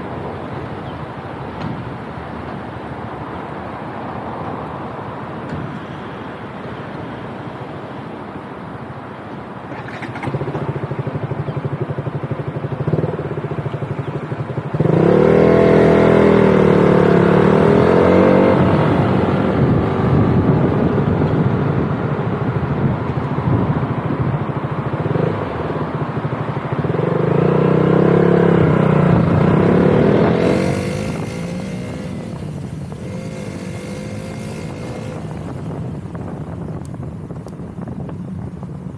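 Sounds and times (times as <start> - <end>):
road noise: 0.0 - 38.9
motorcycle engine accelerating: 9.7 - 38.9.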